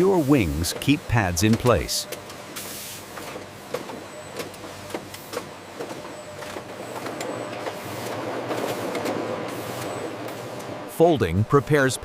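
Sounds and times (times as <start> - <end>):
machinery humming: 0.0 - 2.2.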